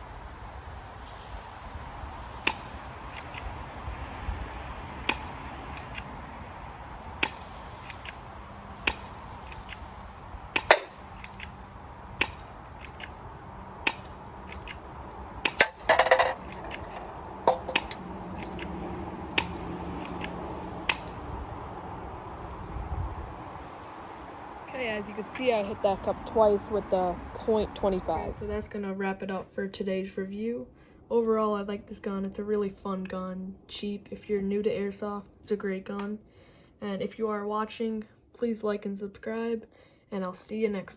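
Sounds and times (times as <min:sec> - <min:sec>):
airsoft pistol clicks and snaps: 0:02.5 - 0:03.5, 0:05.1 - 0:06.1, 0:07.2 - 0:08.2, 0:08.9 - 0:09.9, 0:10.6 - 0:11.6, 0:12.2 - 0:13.2, 0:13.8 - 0:14.8, 0:15.4 - 0:15.8, 0:16.4 - 0:18.8, 0:19.4 - 0:21.2.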